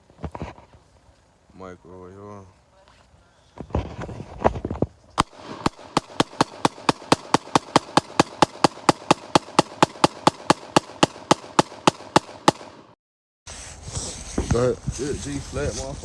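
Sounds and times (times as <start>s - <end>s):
rapid pistol gunshots: 5.2s - 13.0s.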